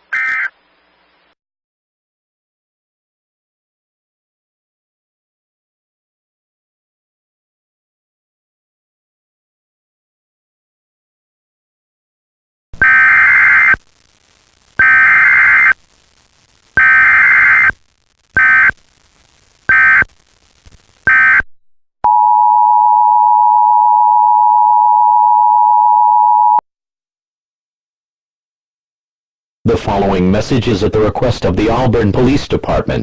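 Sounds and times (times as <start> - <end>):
warbling data tone bursts: 12.8 - 13.9, 14.7 - 15.8, 16.7 - 17.8, 18.4 - 18.8, 19.7 - 20.2, 21.0 - 21.5
two-tone attention signal: 22.1 - 26.6.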